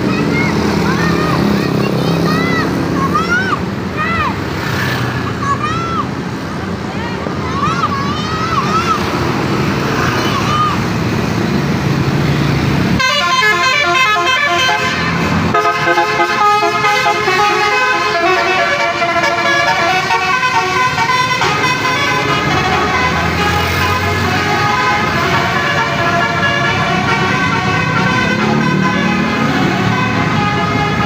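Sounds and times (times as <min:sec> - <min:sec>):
musical air horn tune: 0:13.0 - 0:31.0.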